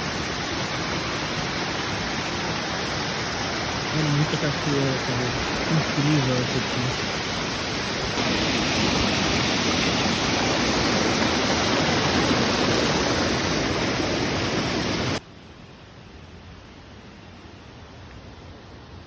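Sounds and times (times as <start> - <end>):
waterfall roaring: 0.0 - 15.2
faint hiss: 0.0 - 19.0.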